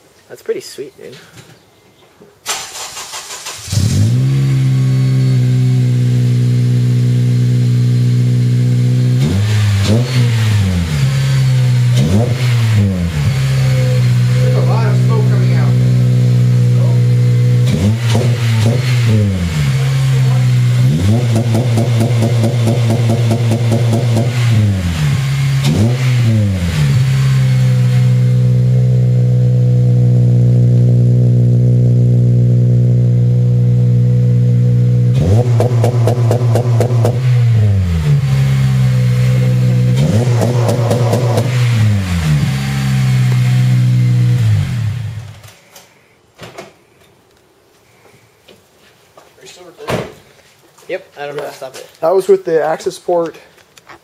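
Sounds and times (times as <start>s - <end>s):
rev limiter crackle: 2.4s - 45.6s
car engine droning at rev limit: 3.5s - 45.4s.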